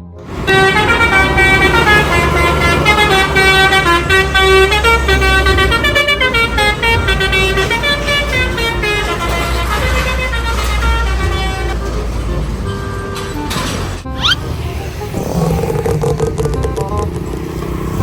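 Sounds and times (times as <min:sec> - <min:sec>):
bus engine rumble: 0:00.0 - 0:18.0
musical bus air horns: 0:00.0 - 0:18.0.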